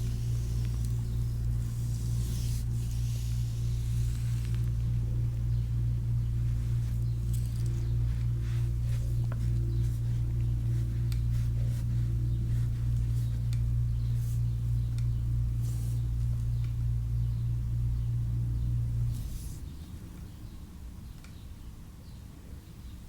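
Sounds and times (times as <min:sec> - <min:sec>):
low electric hum: 0:00.0 - 0:23.0
hands rubbing skin: 0:06.4 - 0:14.6.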